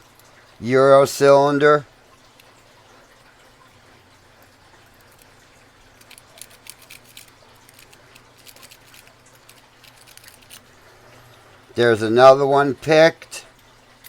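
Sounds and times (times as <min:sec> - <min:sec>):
lock picks clicking and scraping: 0:06.0 - 0:10.7.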